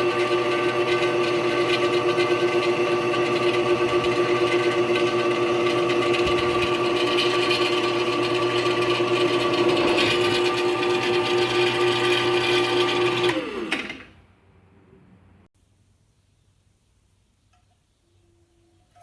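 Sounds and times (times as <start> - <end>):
drill press motor humming: 0.0 - 14.1.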